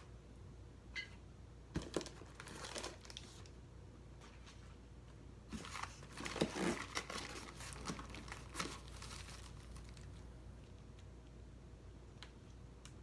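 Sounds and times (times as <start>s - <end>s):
packaging crinkling and rustling: 1.8s - 3.6s, 5.5s - 10.3s.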